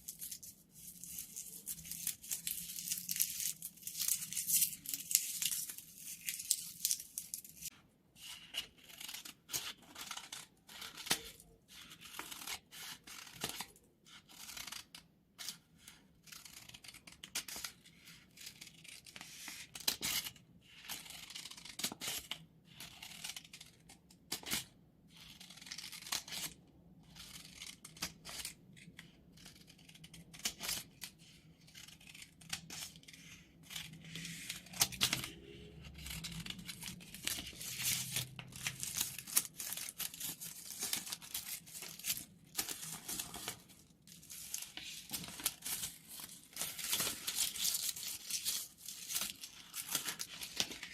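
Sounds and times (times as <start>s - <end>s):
scissors cutting paper: 0.0s - 7.7s, 27.3s - 50.9s.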